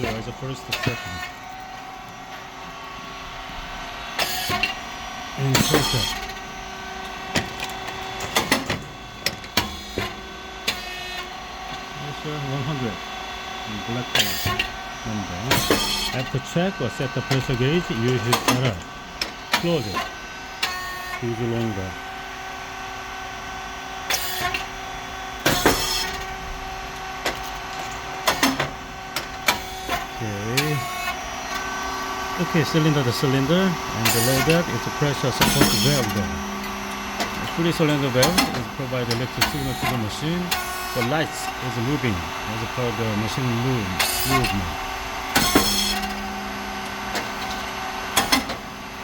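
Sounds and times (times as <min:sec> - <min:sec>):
machine humming: 0:00.0 - 0:49.0
sharp machine clicks and knocks: 0:04.2 - 0:04.8, 0:05.4 - 0:06.4, 0:07.3 - 0:11.3, 0:15.4 - 0:20.9, 0:25.4 - 0:26.4, 0:27.2 - 0:31.7, 0:32.4 - 0:41.4, 0:43.9 - 0:44.7, 0:45.3 - 0:48.7.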